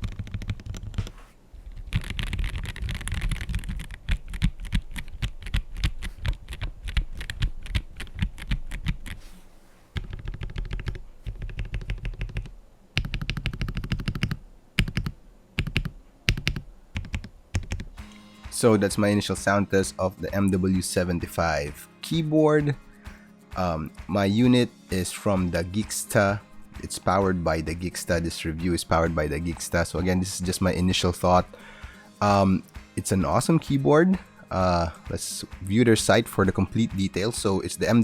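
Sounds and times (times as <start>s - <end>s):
mechanical keyboard typing: 0.0s - 1.1s, 1.7s - 9.2s, 10.0s - 18.0s.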